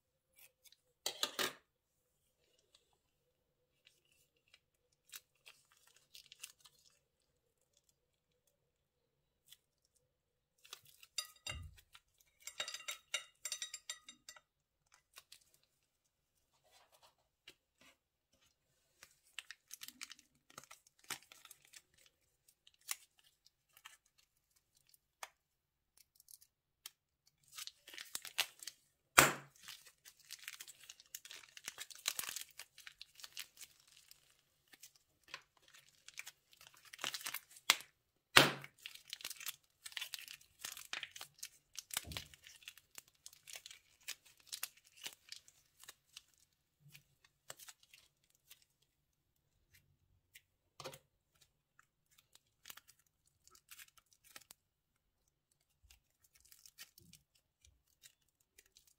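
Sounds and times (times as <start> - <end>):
plastic bags crinkling and tearing: 19.0 - 25.0, 27.4 - 28.8, 29.5 - 37.9, 38.6 - 48.7, 55.6 - 58.9.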